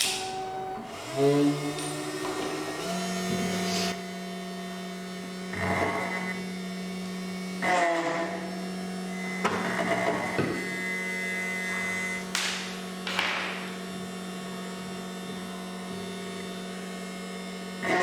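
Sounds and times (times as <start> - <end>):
key cutting machine motor hum: 0.0 - 18.0.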